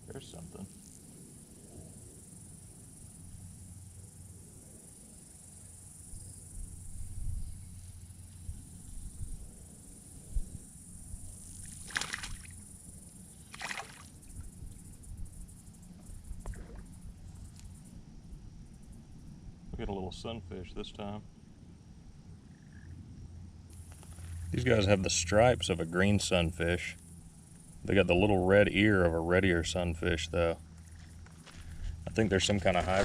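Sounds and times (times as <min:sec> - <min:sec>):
insects buzzing: 0:00.0 - 0:33.0
fish splashing at water surface: 0:11.6 - 0:12.6, 0:13.5 - 0:14.2.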